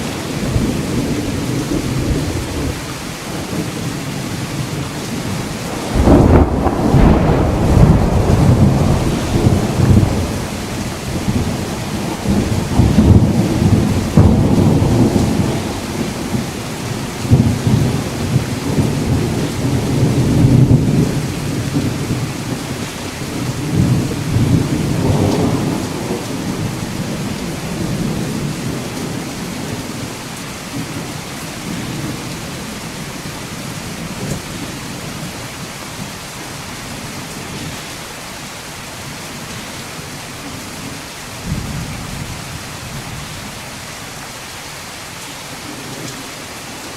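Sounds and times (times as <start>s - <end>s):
rolling thunder: 0.0s - 33.0s, 41.4s - 43.6s
steady rain: 0.0s - 46.9s.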